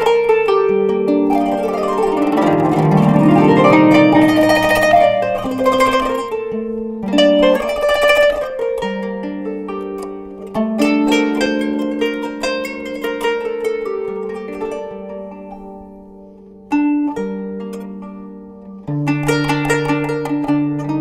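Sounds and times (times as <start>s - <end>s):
plucked zither melody: 0.0s - 21.0s.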